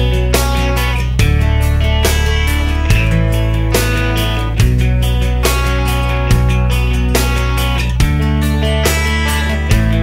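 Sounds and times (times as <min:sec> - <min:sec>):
steady bass: 0:00.0 - 0:10.0
strummed guitar: 0:00.0 - 0:10.0.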